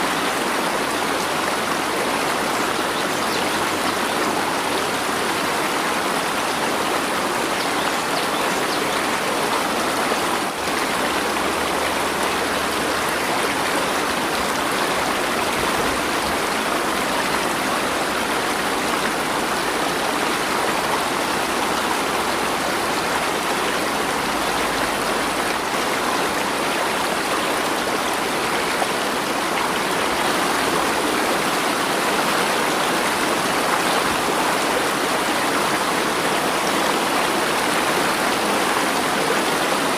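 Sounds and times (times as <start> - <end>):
stream water flowing: 0.0 - 39.9.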